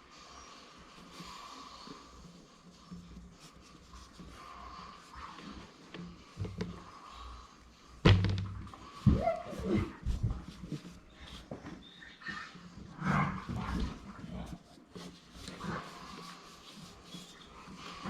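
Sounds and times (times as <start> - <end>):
faint handling noises: 0.1 - 18.0
sharp thump: 8.0 - 8.6.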